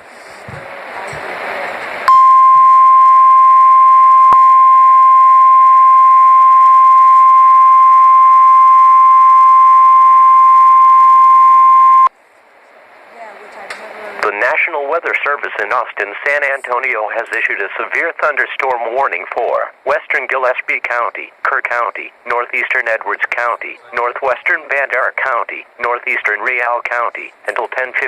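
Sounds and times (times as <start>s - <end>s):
steady loud warning beep: 2.1s - 12.1s
radio hiss: 14.2s - 28.0s.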